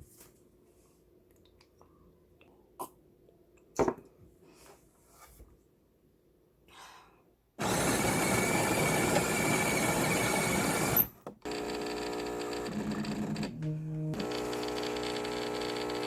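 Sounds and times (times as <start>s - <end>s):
background music with held notes: 13.5s - 14.2s.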